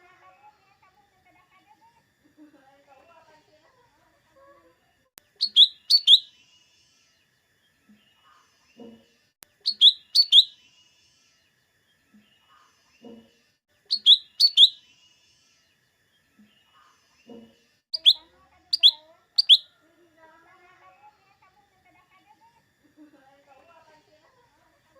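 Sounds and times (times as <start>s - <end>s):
bird singing high sharp notes: 5.4s - 6.3s, 9.7s - 10.6s, 13.9s - 14.8s, 18.0s - 18.2s, 18.8s - 19.6s.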